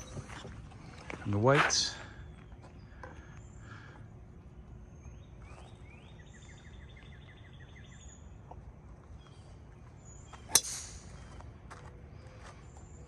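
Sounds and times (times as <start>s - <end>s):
outdoor background noise: 0.0s - 13.0s
golf club striking ball: 10.5s - 11.2s.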